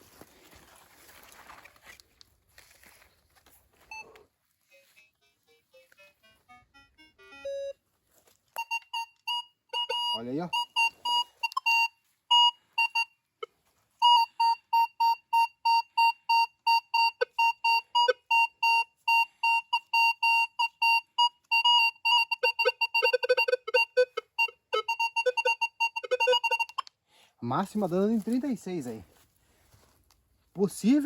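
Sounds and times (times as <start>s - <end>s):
metal detector beeping: 3.9s - 5.2s, 7.1s - 7.8s, 8.6s - 13.2s, 14.0s - 26.9s
low metal detector tone: 8.6s - 13.1s.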